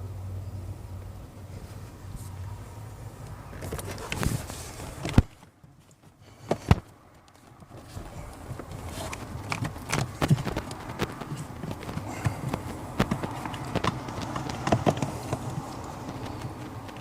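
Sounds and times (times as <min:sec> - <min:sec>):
knocks on plastic parts: 0:09.4 - 0:17.0.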